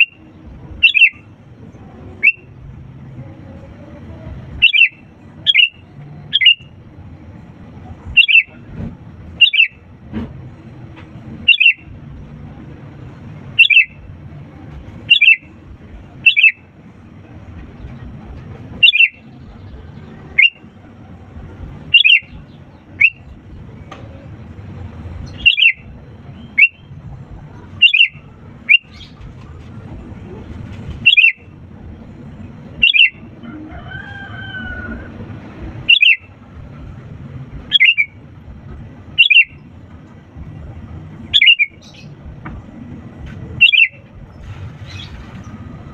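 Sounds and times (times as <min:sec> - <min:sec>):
bird giving sharp calls: 0:00.8 - 0:01.2, 0:08.2 - 0:08.6, 0:09.4 - 0:09.8, 0:11.5 - 0:11.8, 0:13.6 - 0:14.0, 0:15.1 - 0:15.4, 0:16.2 - 0:16.6, 0:18.8 - 0:19.2, 0:21.9 - 0:22.3, 0:25.4 - 0:25.8, 0:27.8 - 0:29.1, 0:31.0 - 0:31.4, 0:32.8 - 0:33.2, 0:35.9 - 0:36.2, 0:37.7 - 0:38.2, 0:39.2 - 0:39.6, 0:41.3 - 0:41.8, 0:43.6 - 0:44.0.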